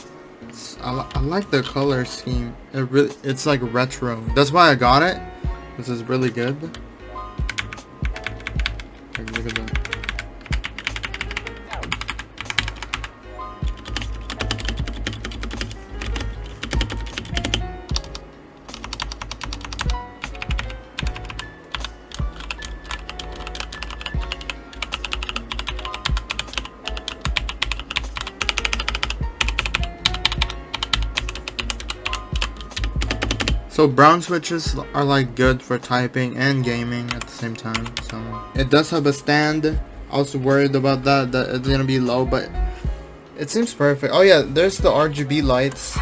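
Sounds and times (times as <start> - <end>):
fast mechanical keyboard typing: 7.5 - 13.1, 13.7 - 18.2, 18.8 - 33.6, 37.1 - 38.1.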